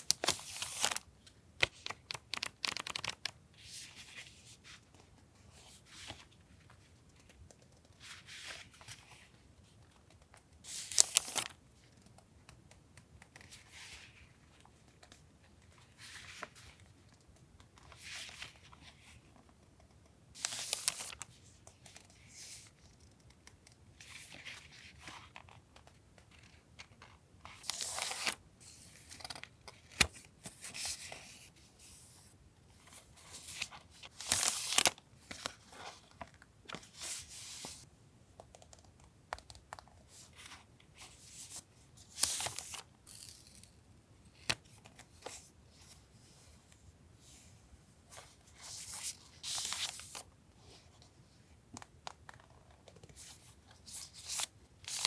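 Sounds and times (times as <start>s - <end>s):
paper rustling and crinkling: 0.0s - 7.3s, 10.7s - 11.6s, 20.4s - 22.7s, 26.2s - 37.9s, 40.1s - 43.7s, 48.1s - 50.8s, 52.3s - 55.0s.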